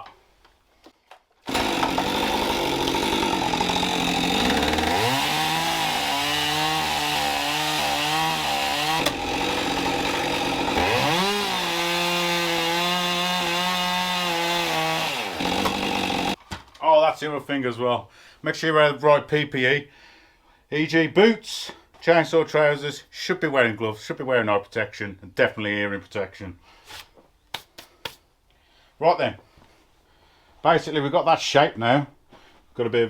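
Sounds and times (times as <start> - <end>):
chainsaw cutting log: 1.4 - 16.4.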